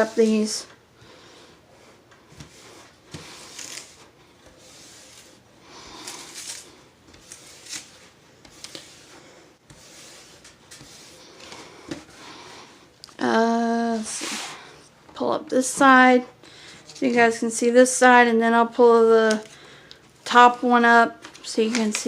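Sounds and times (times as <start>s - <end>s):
panels rustling and rubbing: 0.0s - 17.4s.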